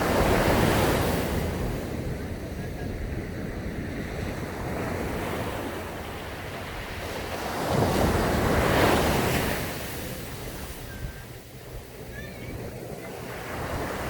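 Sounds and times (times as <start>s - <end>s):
waves crashing on a beach: 0.0s - 14.0s
wind buffeting the microphone: 0.0s - 14.0s.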